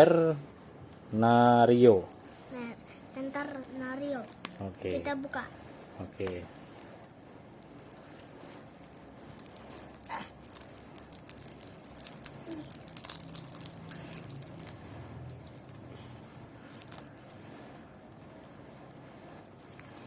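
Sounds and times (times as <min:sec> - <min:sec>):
light clicks and crackles: 0:01.9 - 0:07.0, 0:07.6 - 0:20.0
cardboard packaging crinkling: 0:06.0 - 0:06.9, 0:07.6 - 0:15.8, 0:16.6 - 0:17.6.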